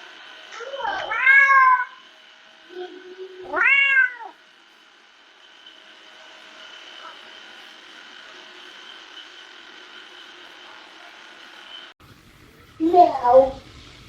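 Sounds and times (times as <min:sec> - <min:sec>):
cat meowing: 0:00.5 - 0:02.0, 0:02.7 - 0:04.4, 0:12.8 - 0:13.6.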